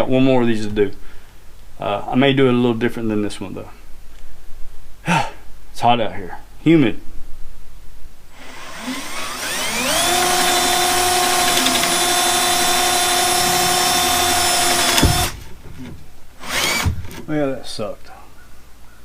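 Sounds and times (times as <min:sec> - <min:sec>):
power drill boring into wood: 0:08.4 - 0:15.5, 0:16.4 - 0:17.2
drill stopping with a knock: 0:08.5 - 0:15.4, 0:16.5 - 0:17.0.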